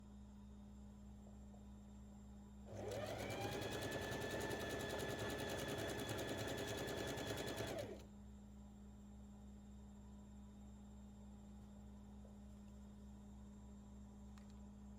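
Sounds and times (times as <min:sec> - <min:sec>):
sewing machine stitching: 0:02.7 - 0:08.0.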